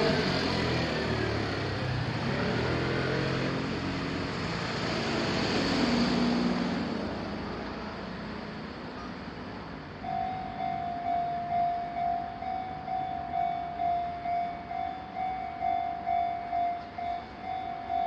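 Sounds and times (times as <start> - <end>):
road vehicles passing: 0.0 - 18.0
level crossing warning bell: 10.0 - 18.0.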